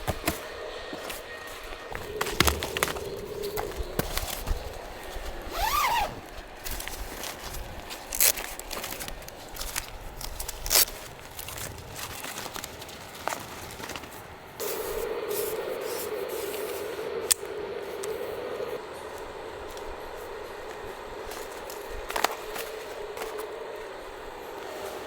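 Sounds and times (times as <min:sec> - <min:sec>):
fabric and gear scraping: 0:01.9 - 0:09.2
steady hum: 0:14.4 - 0:25.0.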